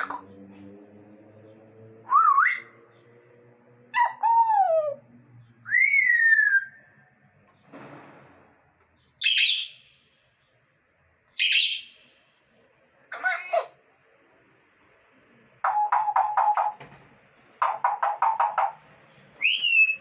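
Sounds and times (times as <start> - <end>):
parrot harsh squawks: 0.0 - 0.2, 13.1 - 13.8
parrot whistling calls: 5.7 - 6.8, 19.4 - 20.0.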